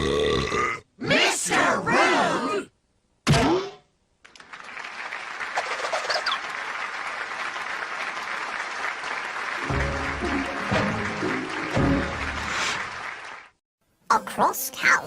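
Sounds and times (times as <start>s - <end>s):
audience applauding: 4.3s - 13.6s.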